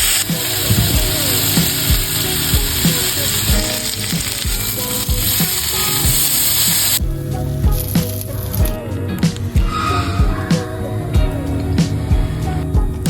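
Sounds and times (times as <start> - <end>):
food sizzling in frying: 0.0 - 8.6
pop music with steady beat: 0.0 - 13.0.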